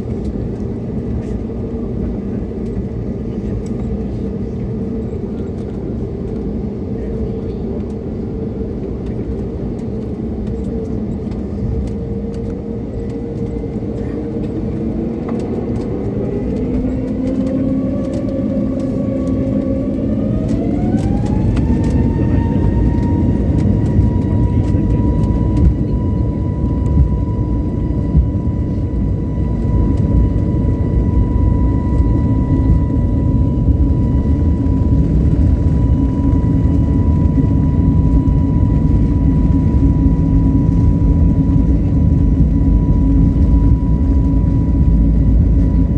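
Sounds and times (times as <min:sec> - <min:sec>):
deep engine rumble: 0:00.0 - 0:45.9
jet engines spooling up: 0:09.0 - 0:45.9.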